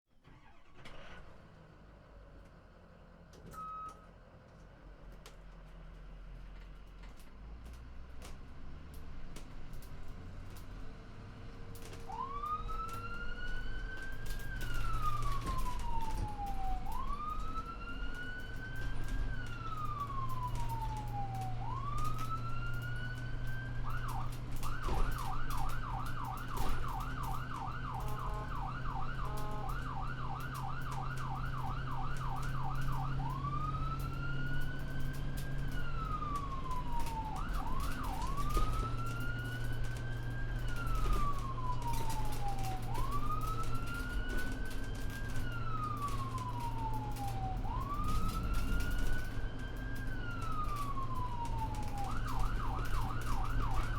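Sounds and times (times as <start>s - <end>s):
low engine hum: 0.2s - 53.9s
ambulance siren wailing: 11.8s - 53.9s.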